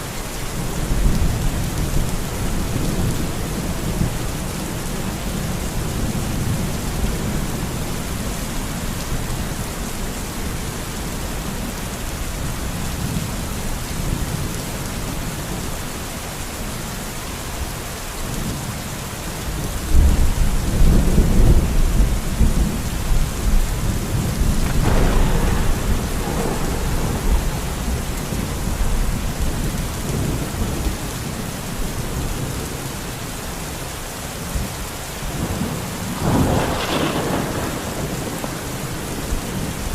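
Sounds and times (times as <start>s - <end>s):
steady rain falling: 0.0s - 39.9s
thunder rumbling: 19.9s - 32.8s, 35.3s - 39.9s.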